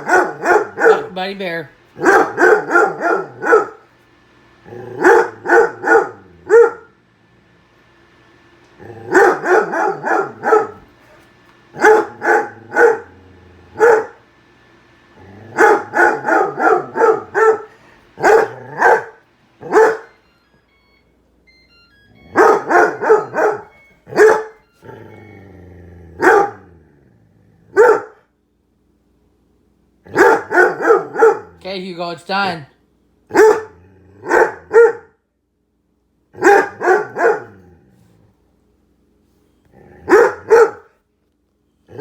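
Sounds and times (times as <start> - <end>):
dog barking: 0.0 - 1.2, 2.0 - 3.9, 5.0 - 7.0, 9.1 - 10.9, 11.8 - 13.2, 13.8 - 14.2, 15.5 - 20.2, 22.3 - 24.6, 26.2 - 26.7, 27.7 - 28.2, 30.1 - 31.6, 33.3 - 35.2, 36.4 - 37.6, 40.1 - 41.0.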